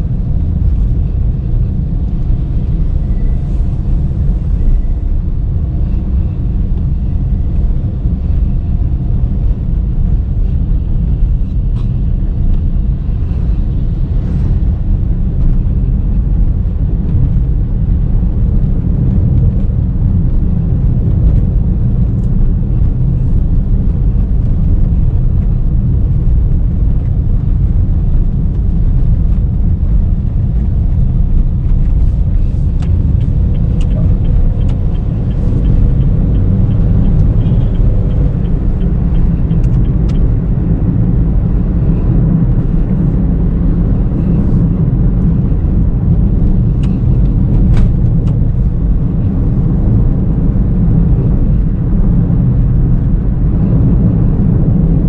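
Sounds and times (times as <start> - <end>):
car road and engine rumble: 0.0 - 55.0
light ticks: 32.8 - 40.3.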